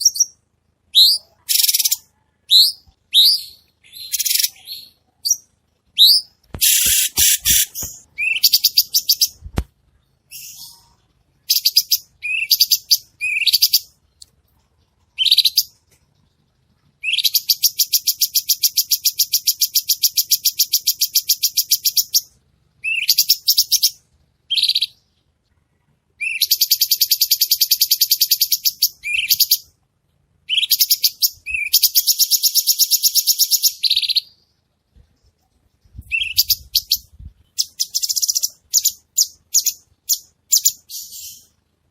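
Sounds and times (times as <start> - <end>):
bird singing whistled phrases: 0.0 - 9.3, 11.5 - 13.8, 22.8 - 23.8, 26.2 - 29.5, 30.5 - 34.4, 36.1 - 41.5.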